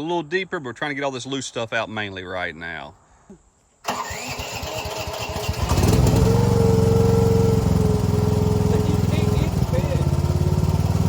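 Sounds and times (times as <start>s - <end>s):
small gasoline engine running: 3.9s - 11.0s.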